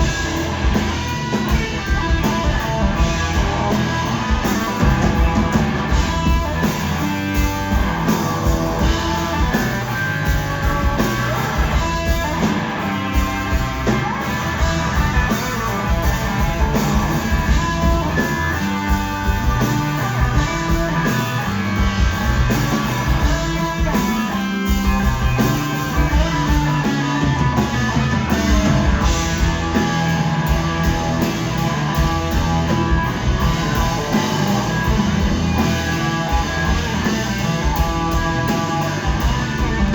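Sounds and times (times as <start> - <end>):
blues-rock band playing: 0.0 - 39.9
electric guitar: 0.0 - 39.9.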